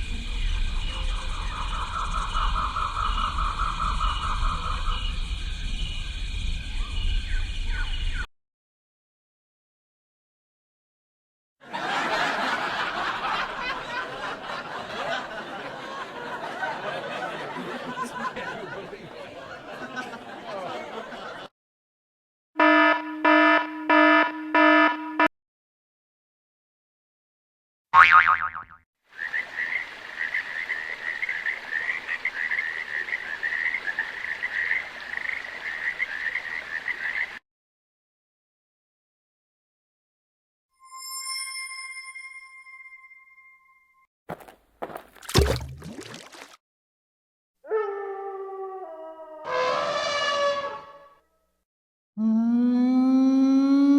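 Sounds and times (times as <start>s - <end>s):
frogs croaking: 0.0s - 8.2s, 29.1s - 37.4s
crowd laughing and chattering: 11.6s - 21.5s.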